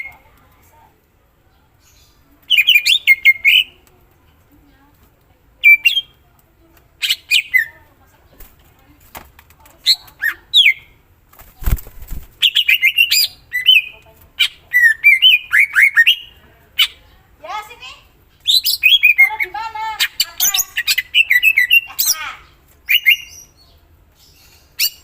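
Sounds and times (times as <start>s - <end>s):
bird singing chips and whistles: 22.9s - 23.4s.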